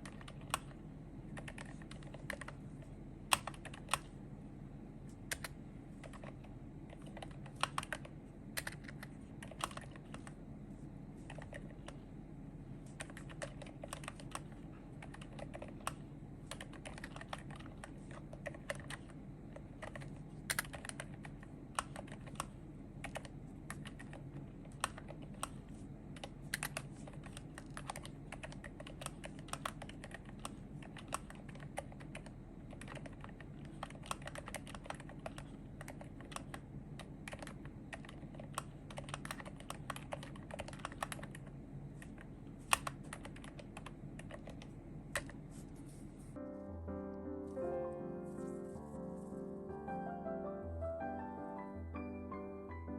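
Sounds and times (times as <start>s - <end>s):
typing on mechanical keyboard: 0.0s - 2.6s, 3.3s - 4.1s, 5.3s - 10.4s, 11.2s - 12.0s, 13.0s - 45.4s
steady low hum: 0.0s - 50.0s.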